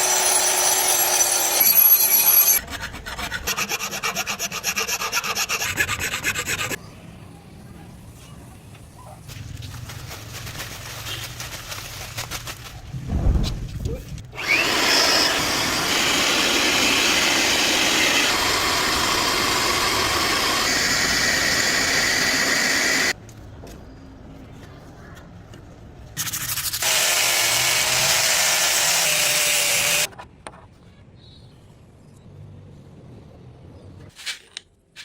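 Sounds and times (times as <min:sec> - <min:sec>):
power grinder grinding steel: 0:00.0 - 0:02.6, 0:14.4 - 0:23.2, 0:26.8 - 0:30.1.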